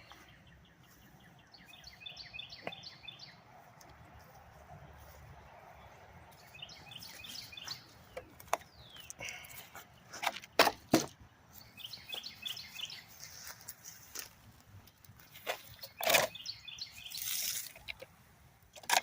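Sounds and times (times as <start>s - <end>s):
songbird chirping: 0.0s - 18.8s.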